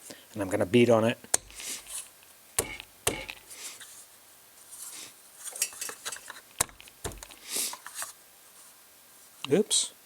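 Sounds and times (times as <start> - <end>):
knocks on wooden case: 6.6 - 7.3.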